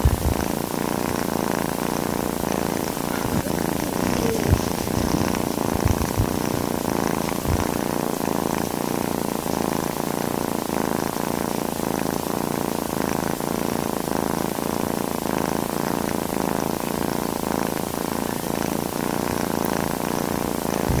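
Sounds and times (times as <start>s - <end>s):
low bumps: 0.0s - 1.1s, 2.9s - 7.9s
cat purring: 0.0s - 21.0s.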